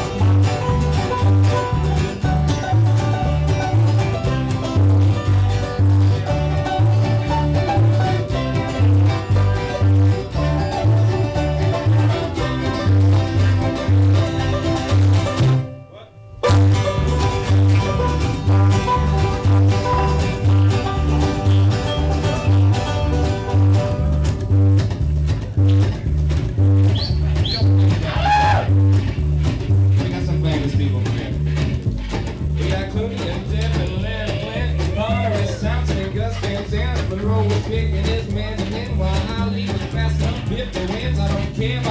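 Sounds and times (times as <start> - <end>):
bluegrass band playing: 0.0 - 41.9.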